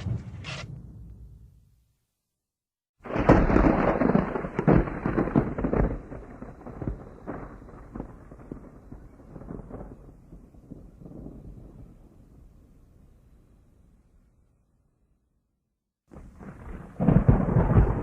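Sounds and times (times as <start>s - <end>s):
thunderclap: 0.0s - 1.6s, 3.0s - 12.2s, 16.1s - 18.0s
rolling thunder rumble: 3.0s - 12.4s, 16.1s - 18.0s.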